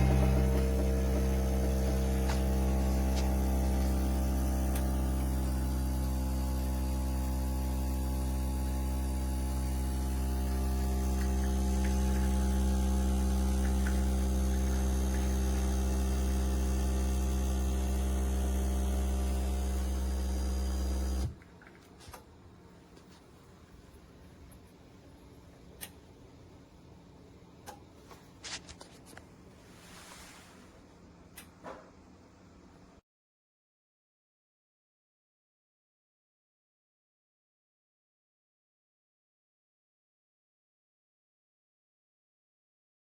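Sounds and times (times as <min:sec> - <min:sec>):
espresso machine humming: 0:00.0 - 0:21.4.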